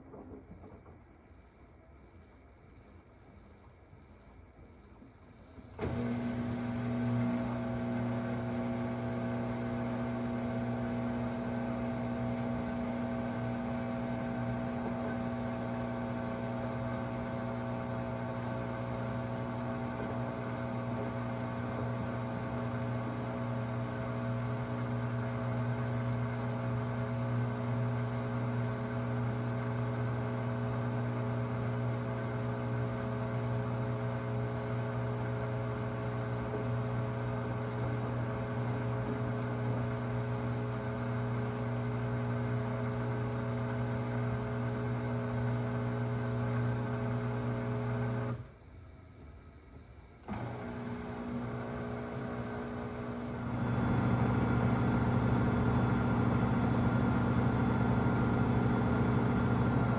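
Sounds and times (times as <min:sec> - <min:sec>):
washing machine buzzing: 0:05.7 - 0:48.5, 0:50.2 - 0:59.9.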